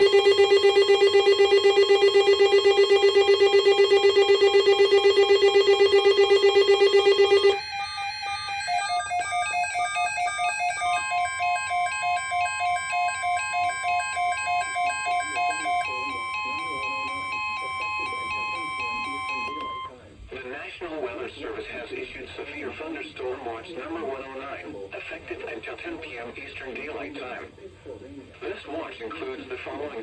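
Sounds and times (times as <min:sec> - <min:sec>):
pulsing buzzy electronic tone: 0:00.0 - 0:10.7
bleeping tones changing pitch: 0:00.0 - 0:19.9
steady high electronic tone: 0:00.0 - 0:19.9.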